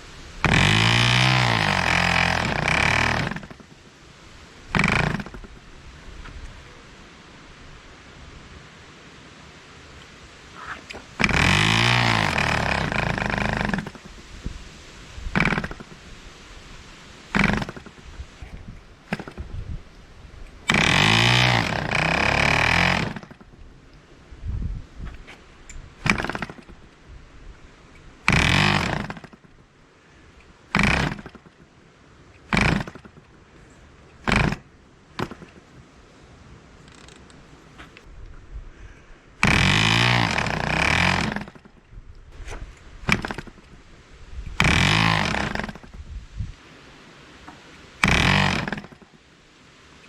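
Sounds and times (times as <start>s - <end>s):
model airplane engine sputtering: 0.4s - 3.9s, 4.7s - 5.8s, 10.8s - 14.3s, 15.3s - 16.2s, 17.3s - 19.6s, 20.4s - 23.6s, 25.1s - 26.9s, 27.9s - 29.6s, 30.4s - 31.7s, 32.4s - 33.4s, 34.2s - 35.7s, 39.4s - 46.0s, 48.0s - 49.2s.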